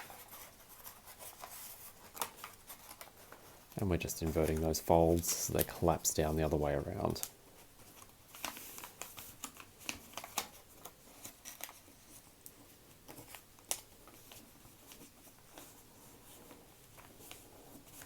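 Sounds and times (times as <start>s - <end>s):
paper crackles and ticks: 0.0s - 18.0s
paper rustling and crinkling: 0.0s - 18.0s.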